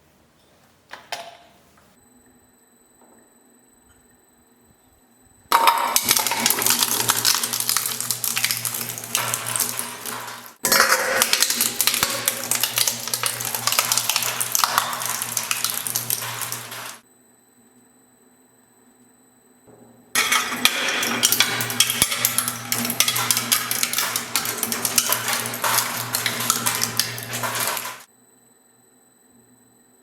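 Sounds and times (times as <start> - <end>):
shredder crunching metal objects: 5.5 - 17.0, 20.2 - 28.1.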